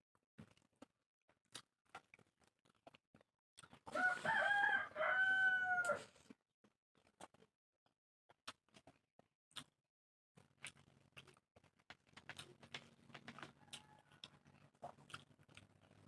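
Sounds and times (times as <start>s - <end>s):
rooster crowing: 3.9s - 6.1s, 13.6s - 14.3s.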